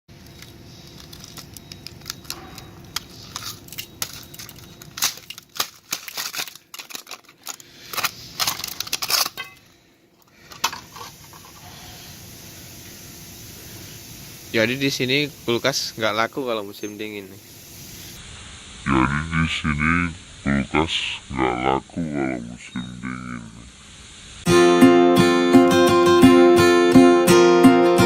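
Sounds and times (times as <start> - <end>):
crackling and crunching: 0.1 - 9.7
low steady hum: 0.1 - 24.5.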